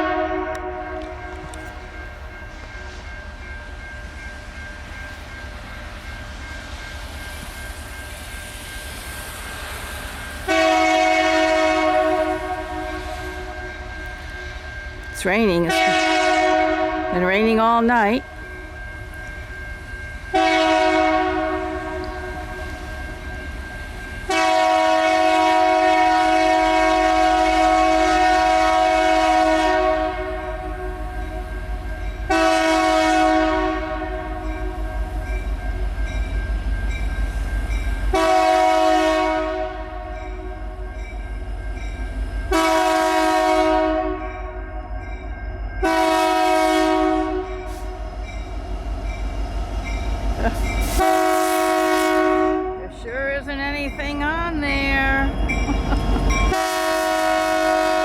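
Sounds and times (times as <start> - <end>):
locomotive air horn blasts: 0.0 - 1.1, 10.5 - 13.7, 15.6 - 17.2, 20.3 - 22.5, 24.3 - 31.0, 32.3 - 34.8, 38.1 - 40.1, 42.5 - 44.3, 45.8 - 48.0, 50.8 - 52.9, 56.5 - 58.0
locomotive rumble: 0.0 - 58.0.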